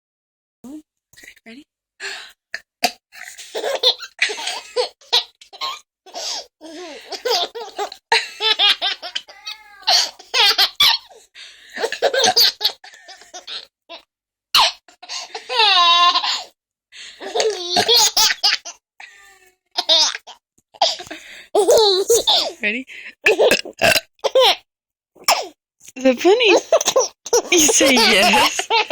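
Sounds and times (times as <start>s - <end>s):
baby laughing: 3.4s - 5.7s, 7.1s - 11.0s, 21.6s - 22.5s, 24.2s - 24.6s, 26.5s - 28.9s.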